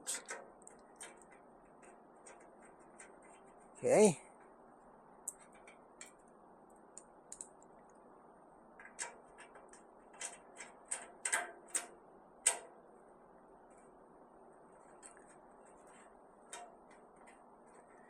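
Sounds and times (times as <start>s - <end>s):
clicks of small metal parts: 0.0s - 1.4s, 8.9s - 12.6s.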